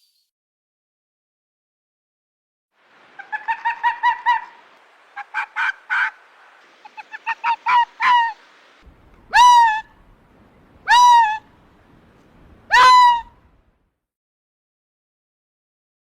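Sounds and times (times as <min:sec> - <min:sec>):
long rising animal call: 0:02.9 - 0:08.6
short rapid animal calls: 0:03.1 - 0:08.7.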